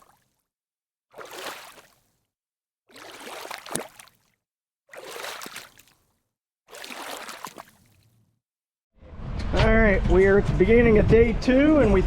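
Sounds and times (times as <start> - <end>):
water noise bursts: 4.9 - 6.0, 6.7 - 8.1.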